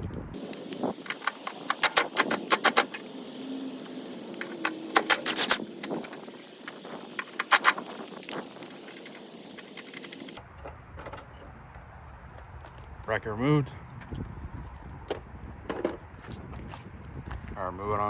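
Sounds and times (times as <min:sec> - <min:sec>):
ratchet clicking: 0:00.4 - 0:10.4.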